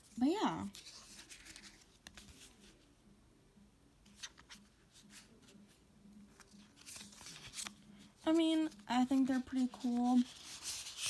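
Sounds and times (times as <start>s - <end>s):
trading cards rustling and clicking: 0.7s - 2.8s, 6.2s - 11.0s.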